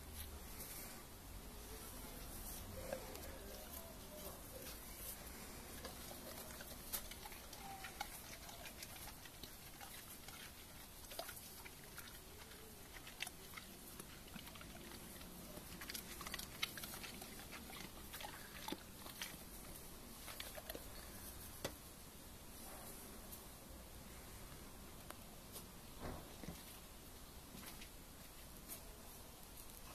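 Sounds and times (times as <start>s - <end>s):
dog chewing grass: 1.6s - 21.7s.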